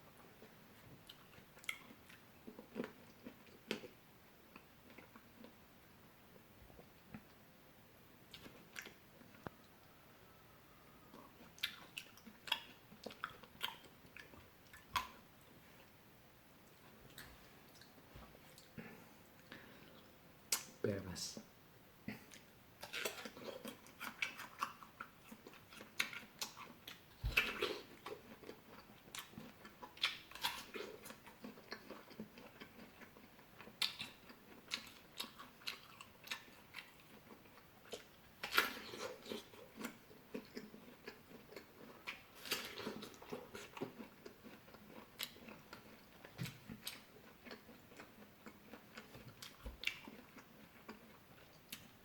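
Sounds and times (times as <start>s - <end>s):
person biting and chewing fruit: 11.0s - 15.2s, 22.1s - 52.0s.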